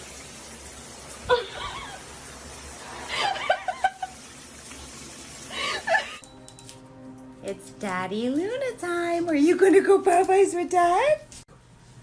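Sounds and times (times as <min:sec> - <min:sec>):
person laughing: 0:01.2 - 0:02.1, 0:03.1 - 0:04.2, 0:05.5 - 0:06.2.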